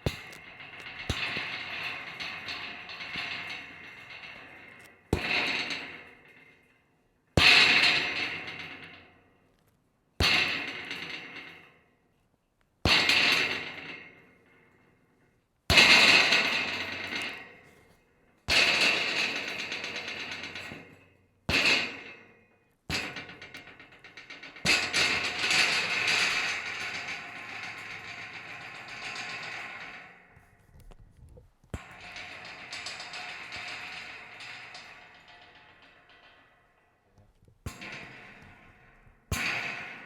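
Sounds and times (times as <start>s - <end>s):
metal rattling: 0.0s - 6.8s, 22.9s - 40.0s.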